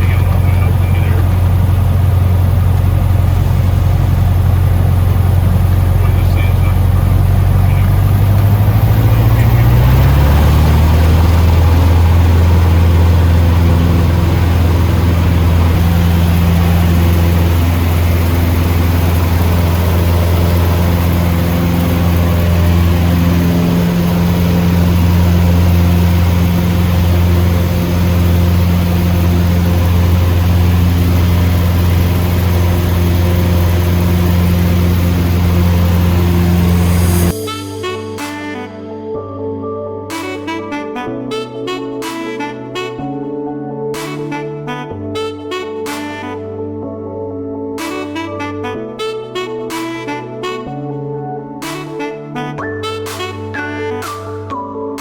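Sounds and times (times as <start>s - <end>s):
light aircraft engine and propeller: 0.0s - 38.7s.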